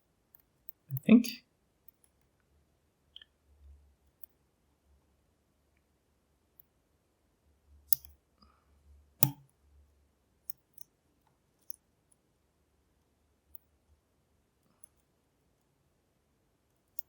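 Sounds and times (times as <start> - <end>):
lock pick clicking: 7.9 - 8.1, 9.2 - 9.4.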